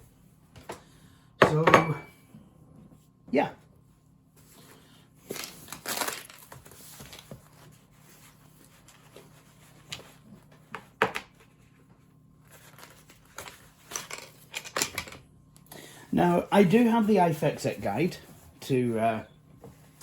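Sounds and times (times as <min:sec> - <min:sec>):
rustling on a work surface: 0:03.9 - 0:14.3, 0:16.3 - 0:20.0.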